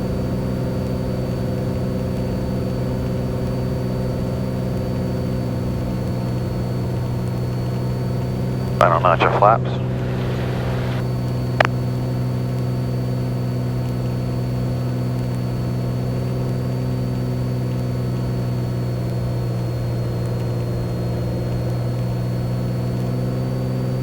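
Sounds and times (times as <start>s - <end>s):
propeller plane engine droning: 8.8s - 11.0s.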